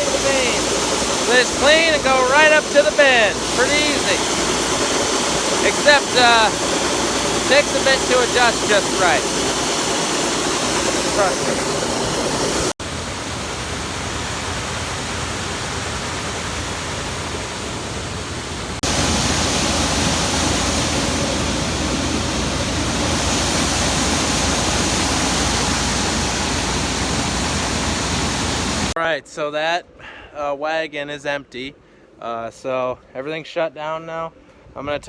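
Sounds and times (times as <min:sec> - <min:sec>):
grain machinery rushing: 0:00.0 - 0:17.4, 0:18.8 - 0:29.0.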